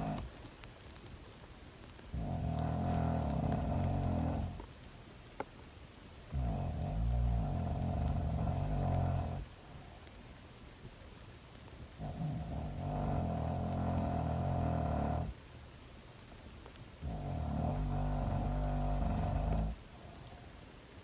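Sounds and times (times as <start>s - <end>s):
girl snoring: 0.0s - 0.3s, 2.2s - 4.6s, 6.4s - 9.5s, 12.0s - 15.4s, 17.0s - 19.8s
quiet breathing: 0.0s - 0.4s, 1.9s - 4.7s, 6.3s - 10.4s, 11.9s - 15.4s, 17.0s - 21.0s.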